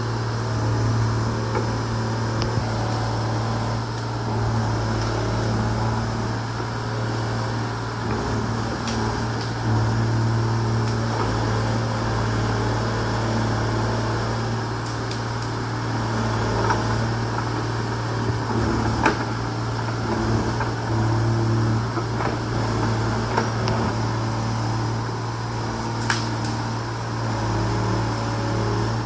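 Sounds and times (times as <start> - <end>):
diesel engine droning: 0.0 - 29.0.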